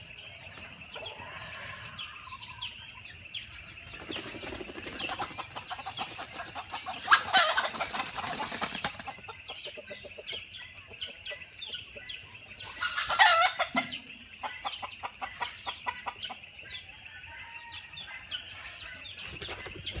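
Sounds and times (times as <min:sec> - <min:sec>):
chickens clucking: 0:00.0 - 0:20.0
loud chicken calls: 0:00.6 - 0:02.8, 0:05.1 - 0:09.2, 0:12.6 - 0:20.0.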